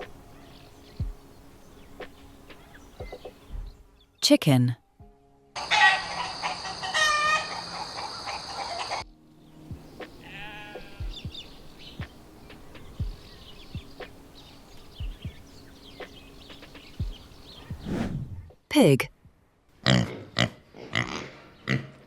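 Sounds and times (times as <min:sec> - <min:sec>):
chicken clucking: 0:05.6 - 0:09.0
chicken squawking: 0:05.6 - 0:09.0.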